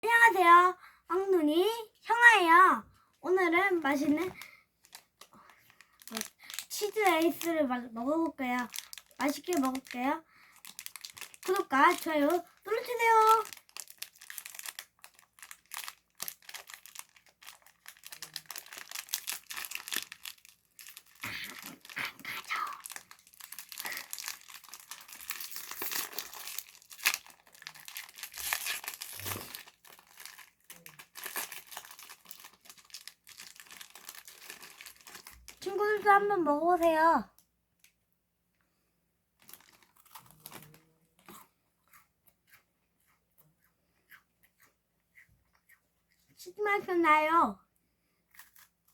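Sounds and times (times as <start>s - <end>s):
plastic wrapper crinkling: 3.5s - 36.2s, 39.4s - 41.3s
child chewing crackers: 4.3s - 7.6s, 8.6s - 35.6s, 39.4s - 46.4s, 48.2s - 48.9s.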